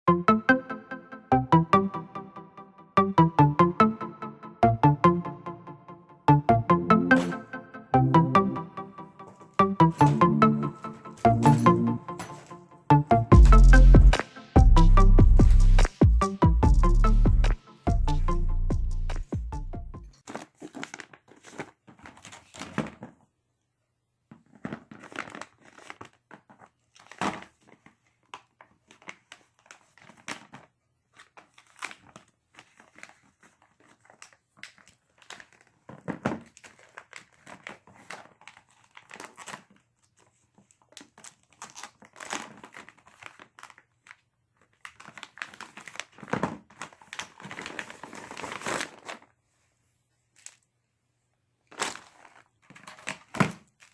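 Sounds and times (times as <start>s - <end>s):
packaging crinkling and rustling: 20.2s - 23.3s, 24.3s - 50.7s, 51.6s - 53.9s.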